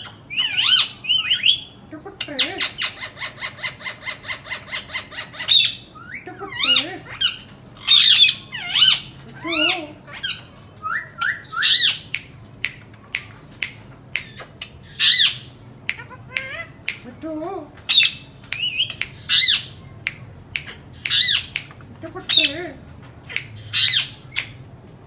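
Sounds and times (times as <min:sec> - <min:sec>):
parrot squawking and warbling: 0:00.0 - 0:12.1, 0:14.2 - 0:17.0, 0:17.9 - 0:19.8, 0:20.6 - 0:24.5
parrot chirping: 0:00.0 - 0:17.2, 0:17.8 - 0:24.6.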